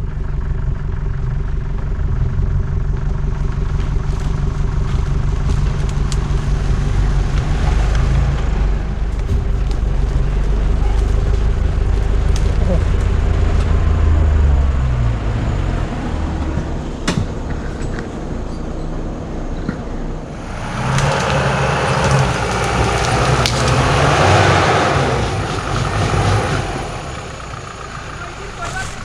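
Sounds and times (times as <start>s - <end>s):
off-road vehicle engine revving: 0.0s - 29.0s
loud rushing noise: 20.3s - 27.1s.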